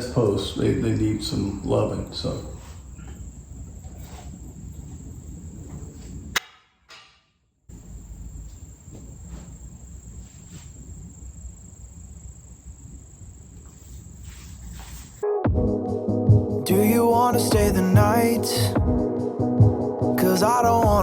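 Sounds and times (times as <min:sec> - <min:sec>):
low noisy rumble: 0:00.0 - 0:06.4, 0:07.7 - 0:14.7
insect chirring: 0:01.6 - 0:06.4, 0:07.7 - 0:15.2.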